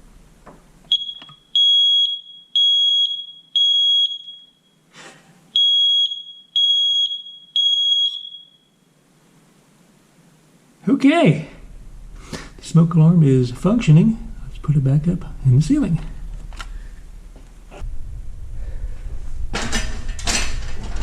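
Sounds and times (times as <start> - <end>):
smoke alarm high-pitched beeps: 0.9 - 4.8, 5.6 - 8.9
smoke alarm chirp: 0.9 - 4.9, 5.6 - 8.9.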